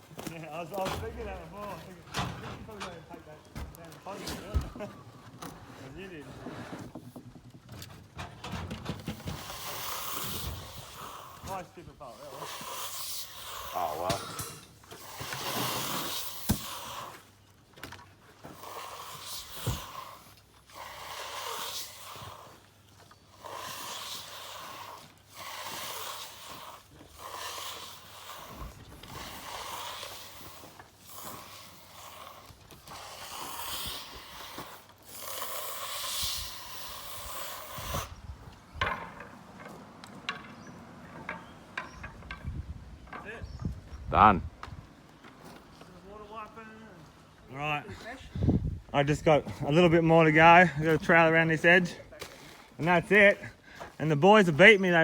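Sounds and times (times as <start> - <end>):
tool scraping across concrete: 0.0 - 17.4, 18.1 - 43.6.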